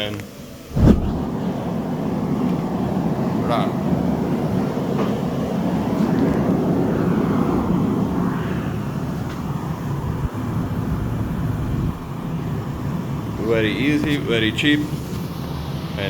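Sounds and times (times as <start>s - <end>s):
gas burner roaring: 0.5s - 16.0s.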